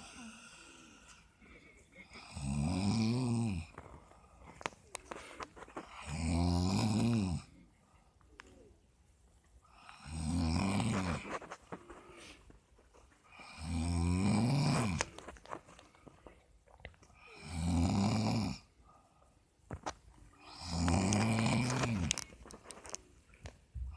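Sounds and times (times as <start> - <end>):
person snoring: 0.0 - 1.2, 2.1 - 3.8, 5.8 - 7.6, 9.8 - 11.4, 13.3 - 15.2, 17.2 - 18.7, 20.4 - 22.3
quiet breathing: 0.0 - 23.9.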